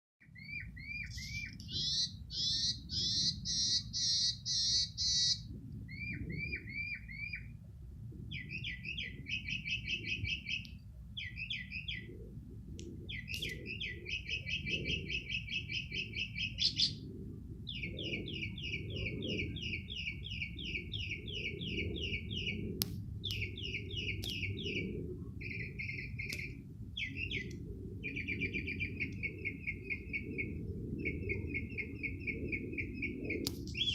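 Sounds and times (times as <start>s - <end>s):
songbird singing: 0.2s - 7.6s, 8.3s - 12.3s, 13.0s - 33.9s
low rumble: 16.9s - 33.9s.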